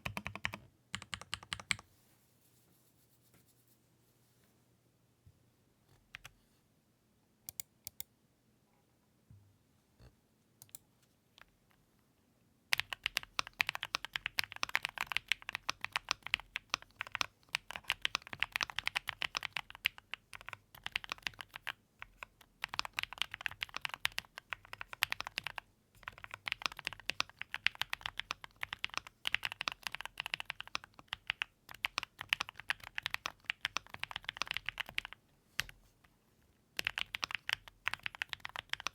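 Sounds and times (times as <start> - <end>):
mechanical keyboard typing: 0.0 - 1.8, 12.7 - 35.8, 36.8 - 38.9.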